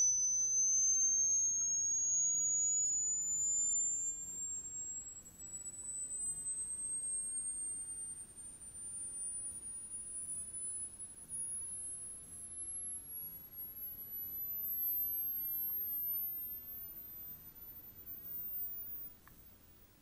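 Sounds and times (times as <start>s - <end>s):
rising pure test tone: 0.0s - 3.9s, 14.6s - 19.1s.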